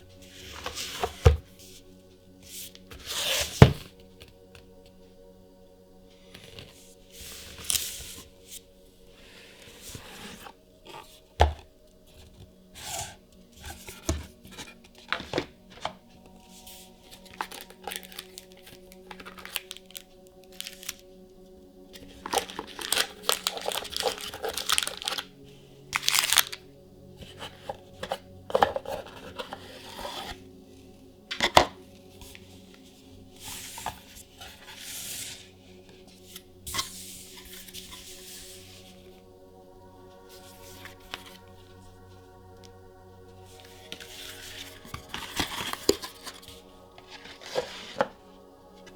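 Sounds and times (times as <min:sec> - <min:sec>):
packaging tearing and rustling: 0:17.0 - 0:21.0, 0:22.0 - 0:25.3, 0:26.0 - 0:26.6, 0:43.8 - 0:48.2
box clicks: 0:17.1 - 0:21.0, 0:22.0 - 0:25.3, 0:26.0 - 0:26.6, 0:31.3 - 0:31.8.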